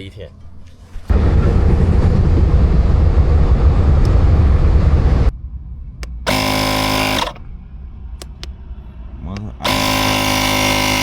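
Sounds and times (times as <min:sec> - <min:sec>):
buzzing tone: 0:06.2 - 0:07.4, 0:09.6 - 0:11.0
electric tyre inflator pump running: 0:06.3 - 0:07.4, 0:09.6 - 0:11.0.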